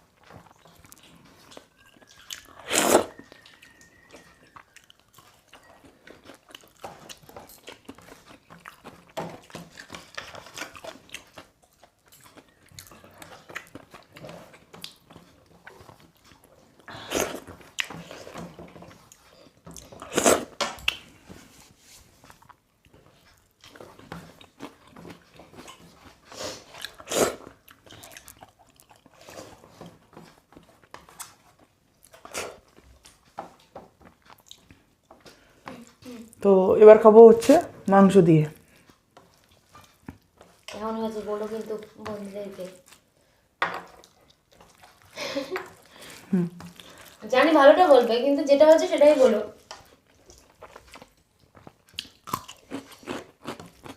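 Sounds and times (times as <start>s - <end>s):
people chewing and crunching food: 0.0s - 53.9s.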